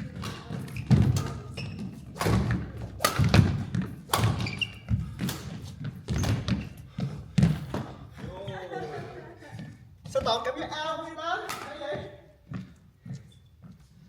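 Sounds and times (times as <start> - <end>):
heavy footfalls on court floor: 0.0 - 10.7, 11.8 - 13.8
racket striking shuttlecock: 0.1 - 6.6, 11.4 - 11.8
short high shoe squeaks: 0.7 - 2.0, 4.2 - 4.9, 13.2 - 13.6.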